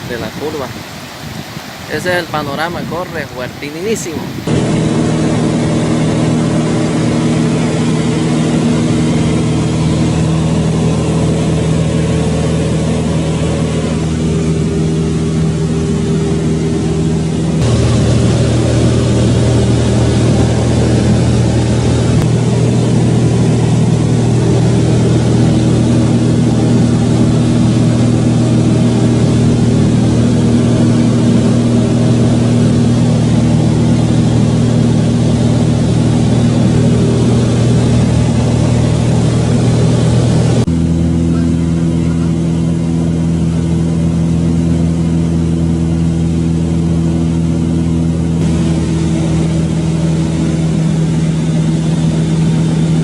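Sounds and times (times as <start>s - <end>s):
constant rushing hiss: 0.0s - 40.7s
engine running: 0.0s - 53.0s.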